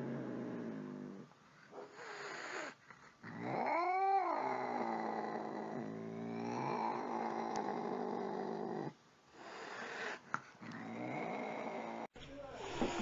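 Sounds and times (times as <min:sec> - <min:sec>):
cat growling yowl: 0:02.0 - 0:08.9.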